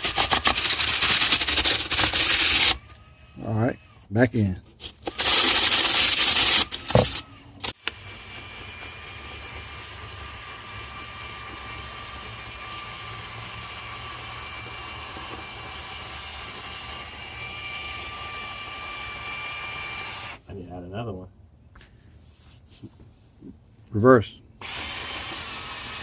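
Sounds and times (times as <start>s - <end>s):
drill spinning brush in duct: 0.0s - 3.7s, 4.8s - 20.4s.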